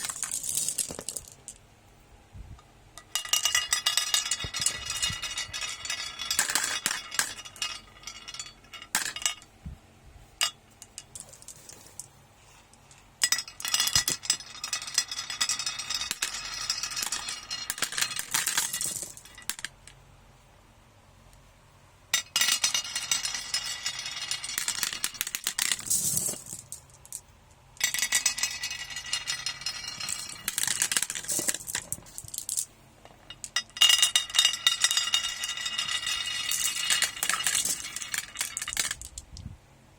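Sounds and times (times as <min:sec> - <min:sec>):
glass marbles clattering down run: 0:00.0 - 0:01.6, 0:03.0 - 0:09.5, 0:13.2 - 0:19.8, 0:22.2 - 0:27.2, 0:27.8 - 0:39.4.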